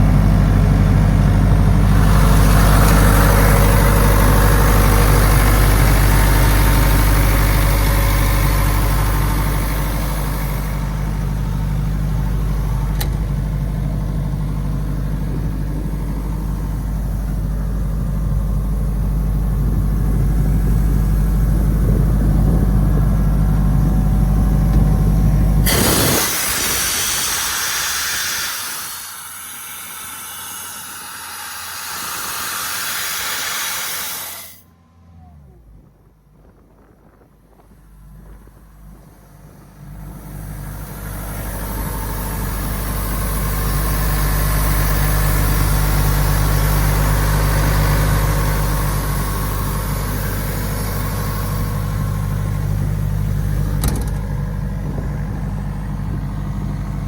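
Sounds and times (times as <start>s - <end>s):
air compressor engine drone: 0.0s - 57.0s
loud hiss of released air: 2.1s - 11.2s, 25.6s - 34.7s
air hissing: 25.6s - 34.6s.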